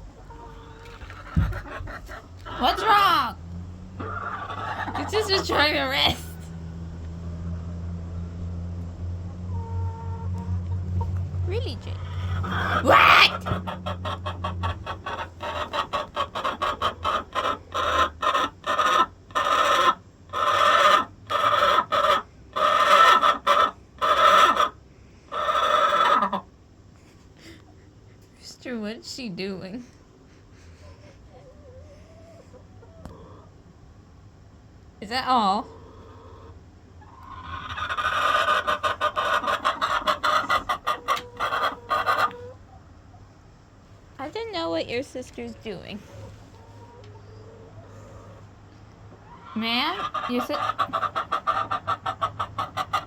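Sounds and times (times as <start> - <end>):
chicken clucking and squawking: 0.0 - 8.0, 9.2 - 28.2, 30.1 - 33.8, 35.0 - 43.7, 45.7 - 53.0
hen rasping: 4.0 - 6.4, 11.5 - 26.4, 37.1 - 42.5.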